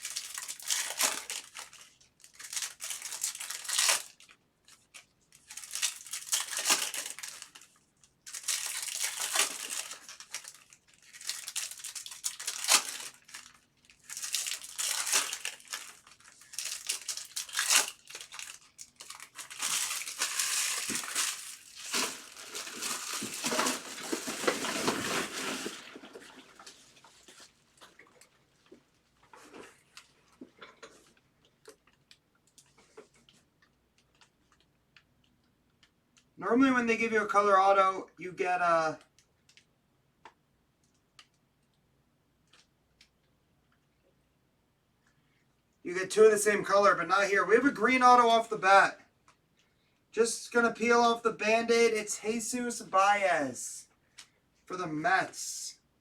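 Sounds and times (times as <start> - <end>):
card pack wrappers crinkling: 0.0 - 28.0.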